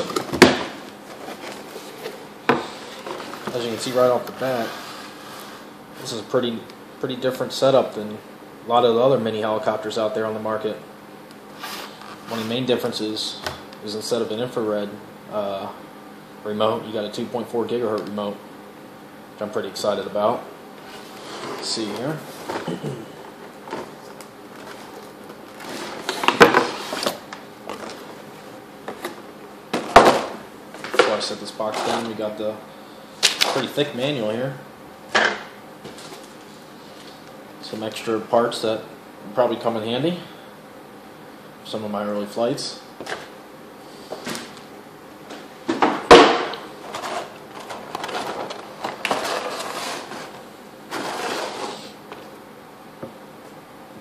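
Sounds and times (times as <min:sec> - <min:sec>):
box packaging rustling: 0:23.4 - 0:28.2, 0:46.8 - 0:51.8
packaging rustling: 0:46.8 - 0:51.6.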